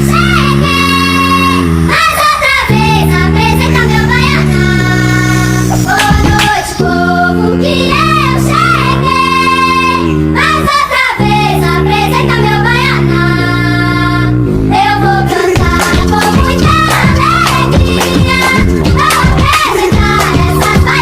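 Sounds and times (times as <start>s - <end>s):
musical accompaniment: 4.1s - 7.3s, 13.1s - 21.0s.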